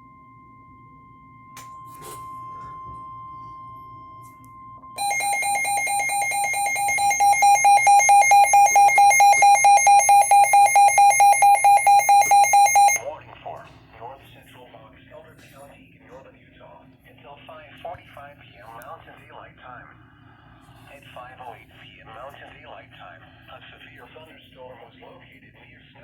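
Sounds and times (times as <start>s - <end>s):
faint steady tone: 0.0s - 13.0s
pulsing buzzy alarm beep: 5.0s - 13.0s.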